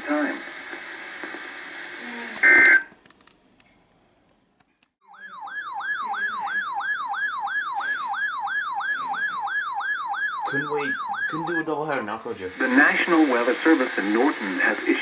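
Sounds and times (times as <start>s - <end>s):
electronic siren yelping: 5.0s - 11.7s.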